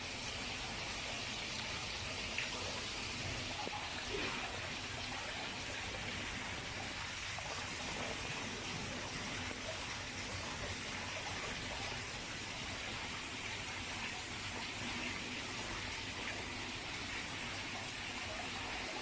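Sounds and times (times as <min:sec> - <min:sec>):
waterfall splashing into pond: 0:00.0 - 0:19.0.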